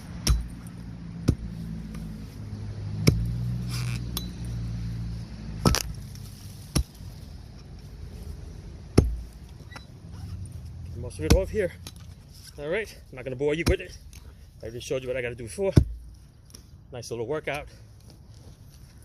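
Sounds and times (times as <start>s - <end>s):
hand tool chopping stump: 0.0s - 4.5s, 5.5s - 7.1s, 8.8s - 9.8s, 10.9s - 14.3s, 15.5s - 16.2s.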